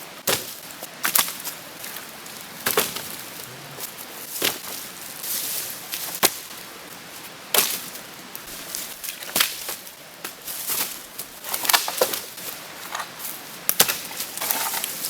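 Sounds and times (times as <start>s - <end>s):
rustling: 0.0s - 15.0s
wood chopping strikes: 0.2s - 1.3s, 2.6s - 3.1s, 13.7s - 14.1s.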